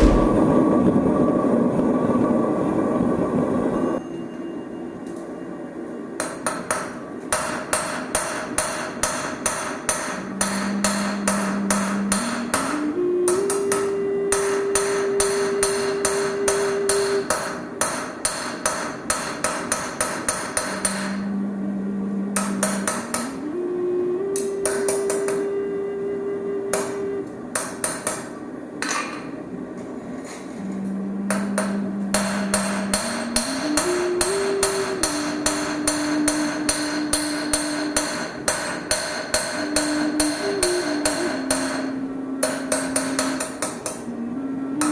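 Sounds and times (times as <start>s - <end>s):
hammer striking steel on anvil: 0.0s - 0.5s
steady tone stepping up in pitch: 0.0s - 0.7s.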